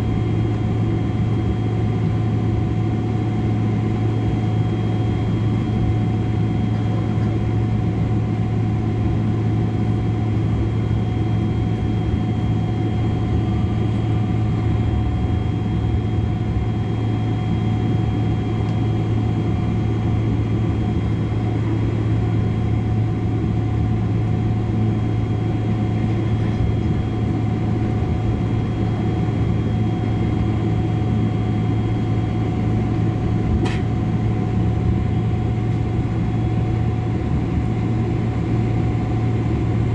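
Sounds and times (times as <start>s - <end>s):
aircraft cabin engine drone: 0.0s - 39.9s.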